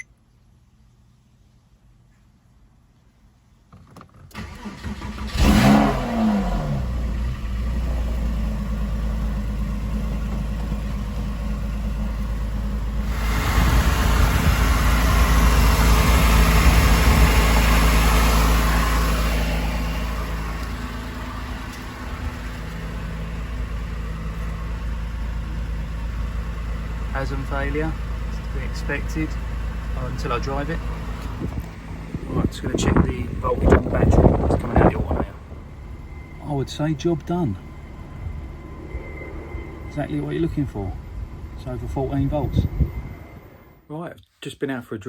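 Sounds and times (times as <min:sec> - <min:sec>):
engine starter cranking: 0:04.2 - 0:06.5
car engine idling: 0:04.3 - 0:43.8.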